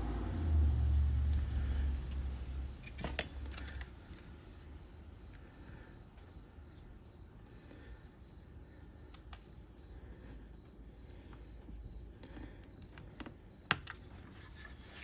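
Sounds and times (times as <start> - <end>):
low rumble: 0.0 - 2.8
crickets chirping: 0.0 - 15.0.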